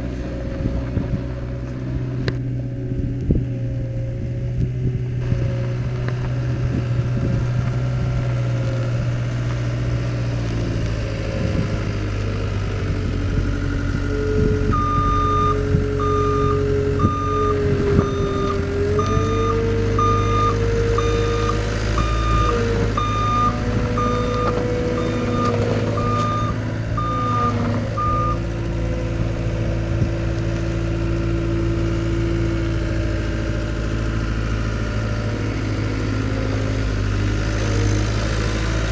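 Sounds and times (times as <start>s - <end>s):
skid steer engine running: 0.0s - 38.9s
backup alarm beeping: 14.7s - 28.4s.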